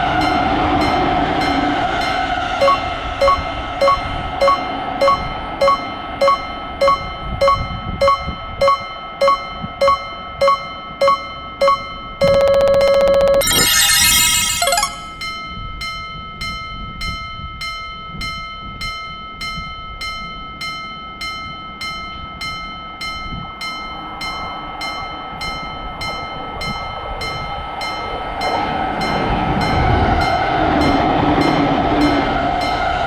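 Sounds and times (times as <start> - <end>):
railroad crossing bell ringing: 0.2 - 12.2.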